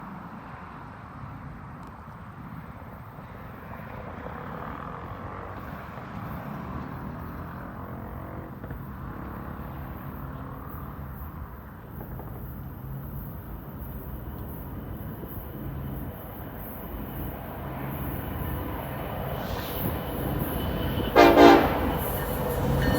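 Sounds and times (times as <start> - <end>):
diesel locomotive engine rumble: 7.0 - 22.9.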